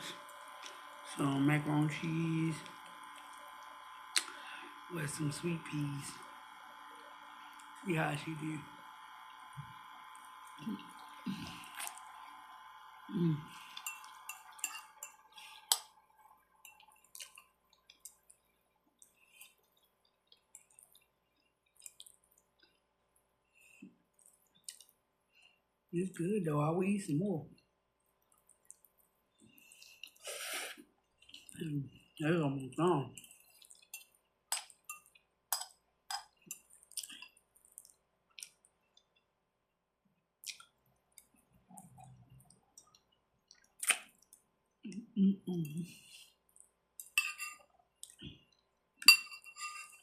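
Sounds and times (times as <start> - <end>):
person chewing spaghetti: 0.0 - 1.0, 2.6 - 4.8, 9.2 - 25.0, 28.0 - 32.1, 33.2 - 39.3, 40.4 - 44.9, 45.9 - 49.2
mouth chewing: 16.8 - 22.8, 24.2 - 25.0, 36.4 - 39.2, 40.4 - 45.8.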